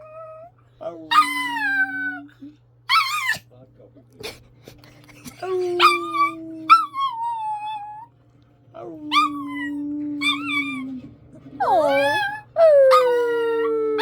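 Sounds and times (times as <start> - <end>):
dog howling: 5.8 - 8.1, 9.0 - 11.0, 11.6 - 14.0.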